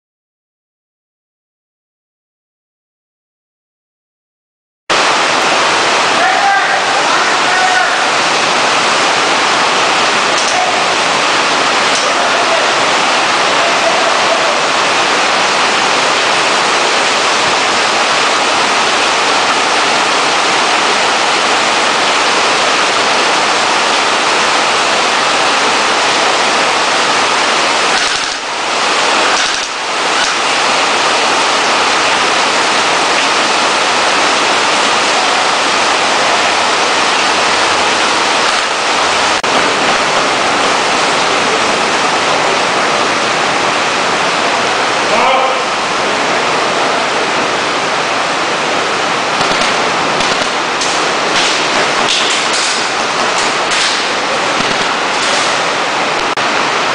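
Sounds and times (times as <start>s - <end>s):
heavy rain falling: 4.9s - 56.9s.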